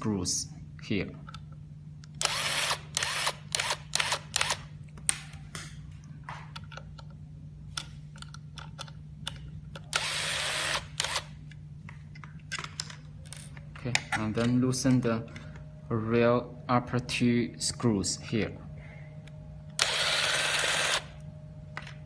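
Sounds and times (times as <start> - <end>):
electric screwdriver whirring: 2.2 - 4.6, 9.9 - 11.3, 19.8 - 21.2.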